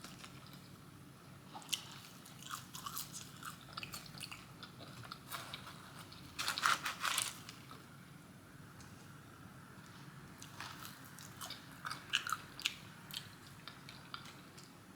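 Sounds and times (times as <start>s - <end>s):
crunchy bites and chewing: 1.6s - 7.8s.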